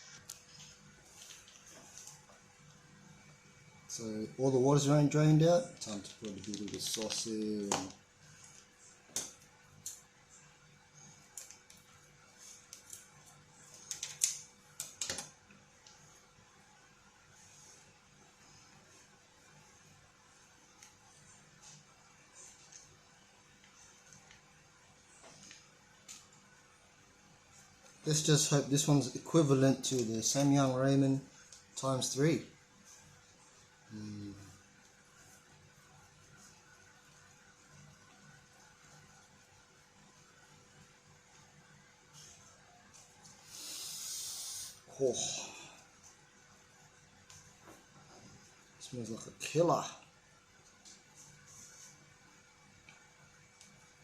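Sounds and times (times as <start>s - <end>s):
faint background hum: 0.0s - 54.0s
plastic packets rustling: 5.8s - 8.0s.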